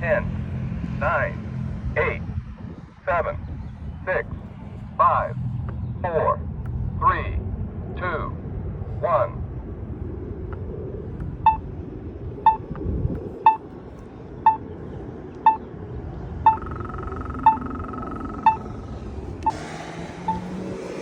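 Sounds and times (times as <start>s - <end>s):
traffic rumble: 0.0s - 21.0s
pedestrian signal beeps: 11.4s - 11.7s, 12.4s - 12.7s, 13.4s - 13.7s, 14.4s - 14.7s, 15.4s - 15.7s, 16.4s - 18.8s, 20.3s - 20.5s.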